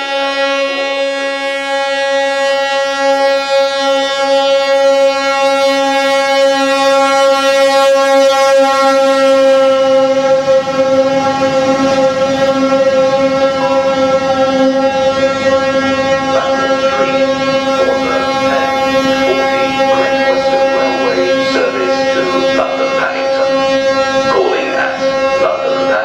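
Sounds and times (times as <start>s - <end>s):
train horn steady tone: 0.0s - 26.0s
rushing noise: 16.0s - 26.0s.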